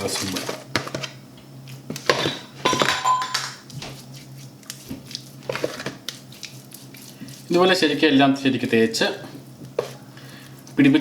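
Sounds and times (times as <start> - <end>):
utensil clinking against bowl: 2.7 - 3.6.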